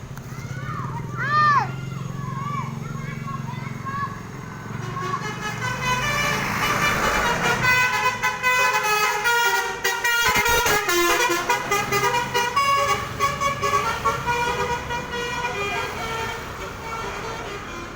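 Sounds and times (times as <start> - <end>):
multi-tone bus horn tune: 4.7 - 17.9.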